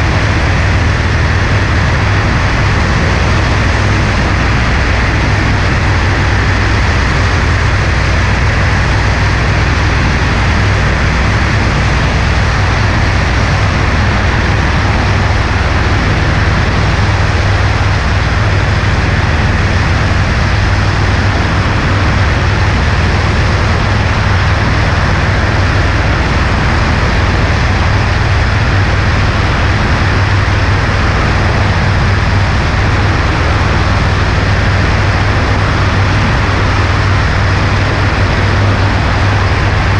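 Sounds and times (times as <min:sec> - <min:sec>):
light aircraft engine drone: 0:00.0 - 0:39.9
rushing wind noise: 0:00.0 - 0:39.9.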